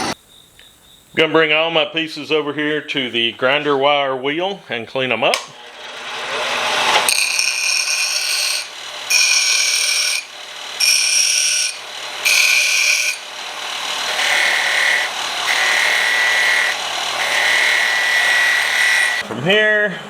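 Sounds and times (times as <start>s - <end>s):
wire wheel grinding steel: 5.6s - 19.2s.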